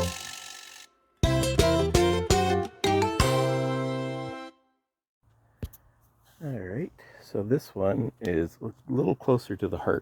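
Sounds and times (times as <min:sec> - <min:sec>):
plucked notes music: 0:01.2 - 0:04.5.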